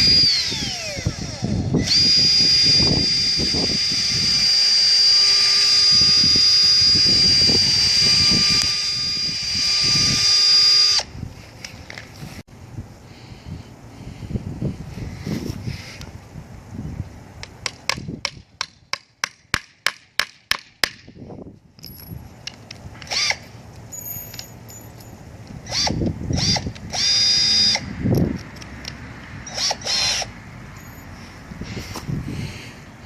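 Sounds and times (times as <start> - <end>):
power drill spinning: 0.0 - 11.1, 23.1 - 23.4, 25.7 - 27.9, 29.5 - 31.9.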